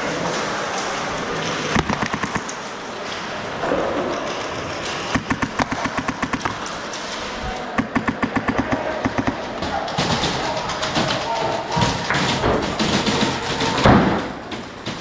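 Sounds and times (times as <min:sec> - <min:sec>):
airsoft rifle rapid bursts: 0:01.7 - 0:02.5, 0:05.1 - 0:06.8, 0:07.8 - 0:12.1.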